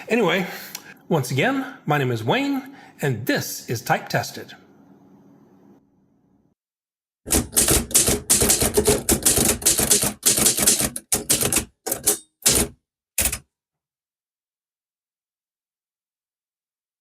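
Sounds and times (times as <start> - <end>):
manual typewriter typing: 7.3 - 13.5.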